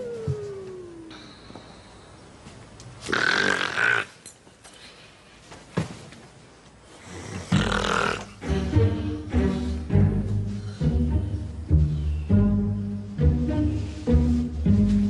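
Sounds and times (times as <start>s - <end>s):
woman snoring loudly: 7.1s - 8.6s.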